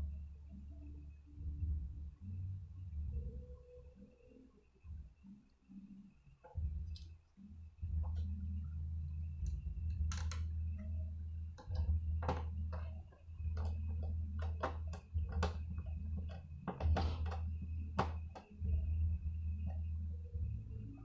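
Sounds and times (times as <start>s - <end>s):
low hum: 0.0s - 21.0s.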